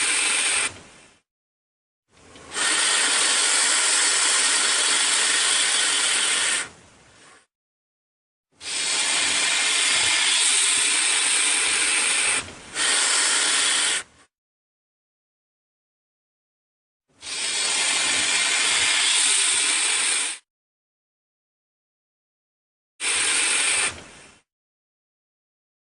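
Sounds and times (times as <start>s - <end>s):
hissing bursts: 0.0s - 0.8s, 2.5s - 7.5s, 8.6s - 14.3s, 17.2s - 20.4s, 23.0s - 24.4s.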